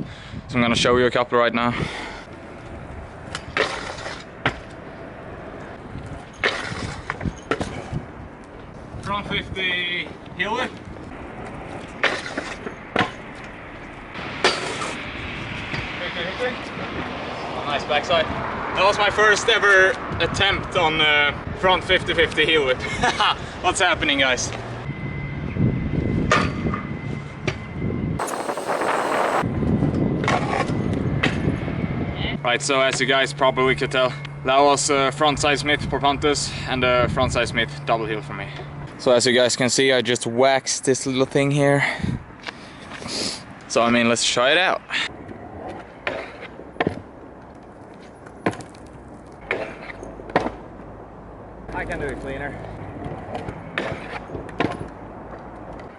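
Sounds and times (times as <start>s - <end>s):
scooter wheels rolling on concrete: 28.2s - 29.5s, 45.6s - 50.7s.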